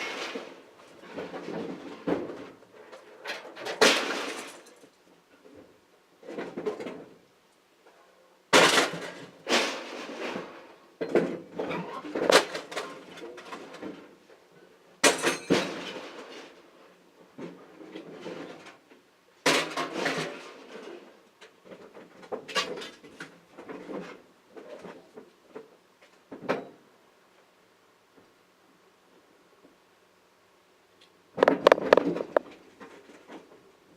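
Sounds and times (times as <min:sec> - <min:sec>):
scrap metal clanging onto pile: 0:01.2 - 0:04.9, 0:08.6 - 0:14.0, 0:15.0 - 0:16.6, 0:19.5 - 0:21.1.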